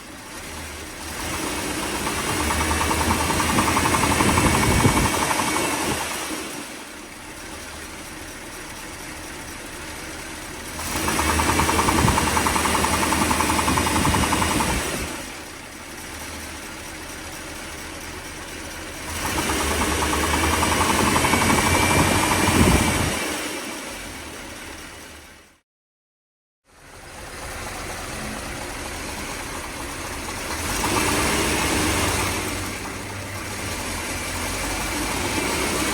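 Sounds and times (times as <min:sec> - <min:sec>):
car engine idling and revving: 0:00.0 - 0:25.6, 0:26.7 - 0:35.9
rapid engine knock: 0:01.3 - 0:06.4, 0:10.8 - 0:15.4, 0:19.2 - 0:23.0, 0:27.0 - 0:33.4.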